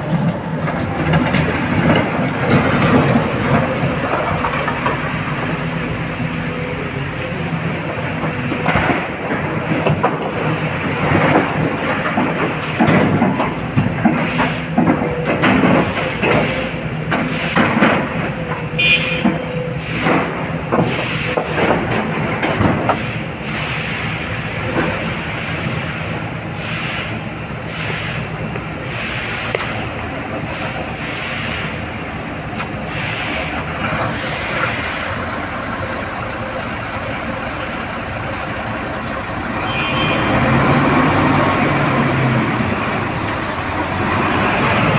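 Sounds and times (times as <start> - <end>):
knocks and clatter: 0.0 - 26.0
excavator diesel engine running: 0.0 - 44.9.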